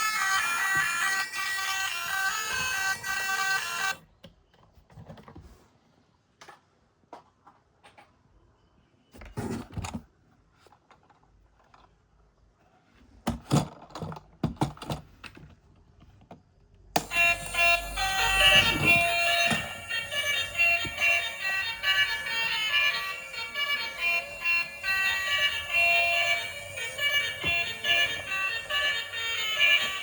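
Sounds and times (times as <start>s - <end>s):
background music: 0.0s - 4.0s, 17.0s - 30.0s
toys clicking and tapping: 17.0s - 30.0s.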